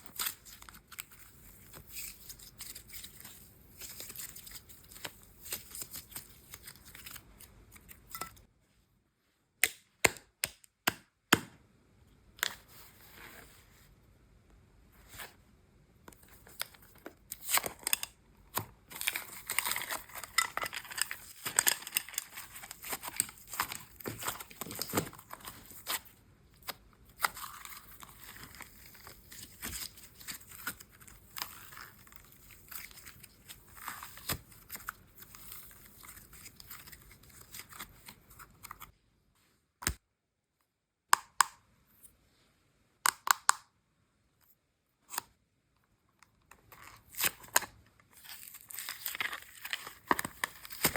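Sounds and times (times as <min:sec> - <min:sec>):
plastic packaging crinkling and tearing: 0:16.4 - 0:38.9, 0:46.7 - 0:50.9.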